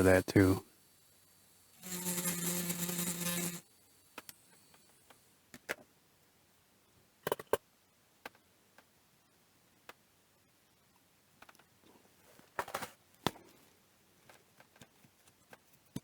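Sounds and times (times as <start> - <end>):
small electric motor buzzing: 0.0 - 5.3.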